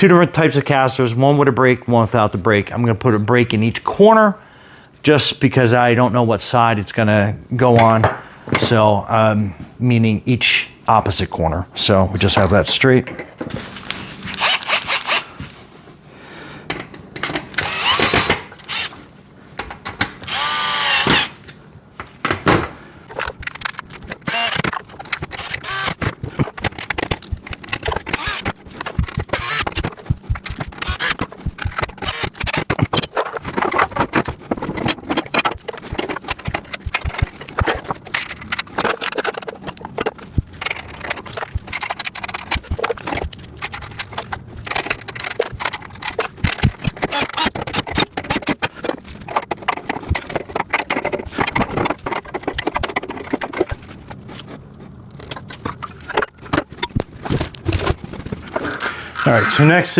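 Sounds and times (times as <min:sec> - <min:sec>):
power drill running: 0:14.4 - 0:15.3, 0:17.6 - 0:19.0, 0:20.2 - 0:21.4, 0:24.2 - 0:24.6, 0:25.4 - 0:26.0, 0:28.0 - 0:28.6, 0:29.2 - 0:29.9, 0:30.7 - 0:31.2, 0:31.8 - 0:32.6, 0:47.1 - 0:47.6
metal clicking and rattling: 0:16.7 - 0:22.4, 0:23.0 - 0:59.8.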